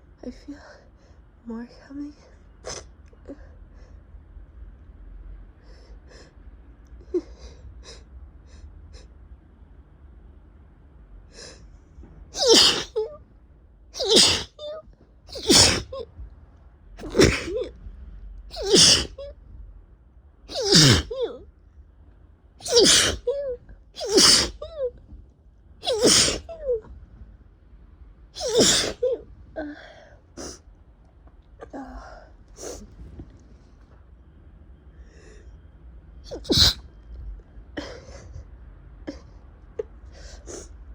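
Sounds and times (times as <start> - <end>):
person sneezing loudly: 12.4 - 13.1, 14.0 - 14.7, 15.3 - 16.0, 17.0 - 17.7, 18.5 - 19.2, 20.5 - 21.3, 22.6 - 23.4, 24.0 - 24.6, 25.8 - 26.6, 28.4 - 29.1, 36.3 - 36.8.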